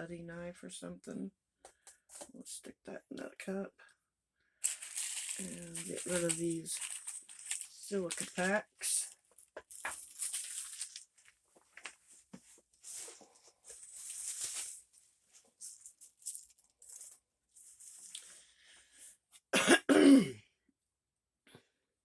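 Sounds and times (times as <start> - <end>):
packaging rustling: 4.6 - 18.2
person coughing: 19.6 - 20.4.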